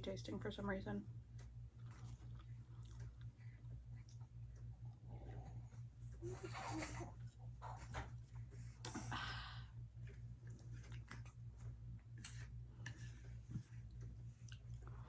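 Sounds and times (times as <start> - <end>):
low electrical hum: 0.0 - 15.0
person chewing food: 1.3 - 5.6, 12.2 - 15.0.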